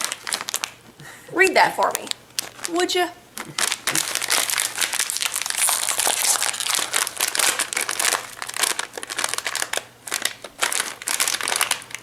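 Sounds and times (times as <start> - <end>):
plastic bag crinkling: 0.0 - 0.7, 2.0 - 2.7, 3.6 - 12.0.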